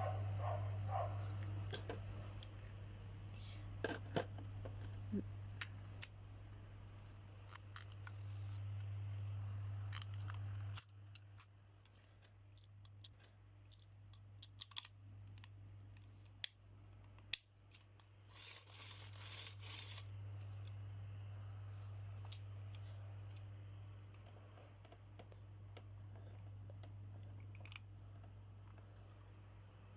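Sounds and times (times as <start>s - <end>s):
steady low hum: 0.0s - 29.9s
plastic parts clicking: 9.9s - 20.0s.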